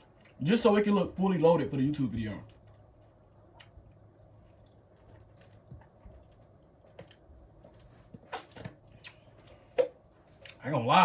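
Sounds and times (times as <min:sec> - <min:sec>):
mouth clicks while eating: 0:09.0 - 0:09.3.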